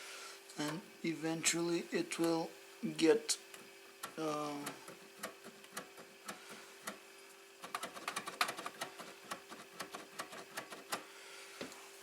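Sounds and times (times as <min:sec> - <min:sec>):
faint steady hum: 0:00.0 - 0:12.0
small parts clicking and tapping: 0:03.5 - 0:07.0, 0:07.6 - 0:11.1.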